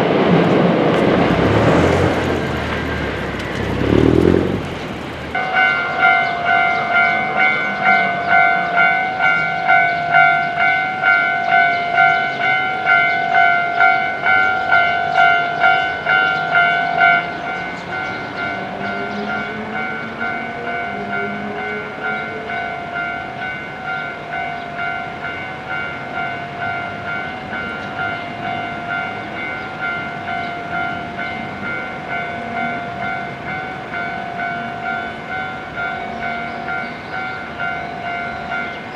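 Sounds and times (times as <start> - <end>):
passing train wheels and motor: 0.0 - 5.4
level crossing warning bell: 19.8 - 38.9.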